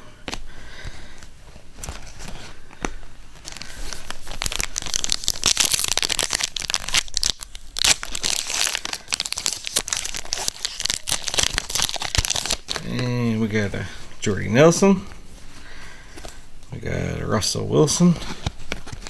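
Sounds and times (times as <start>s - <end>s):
card pack wrapper tearing and crinkling: 1.8s - 13.7s.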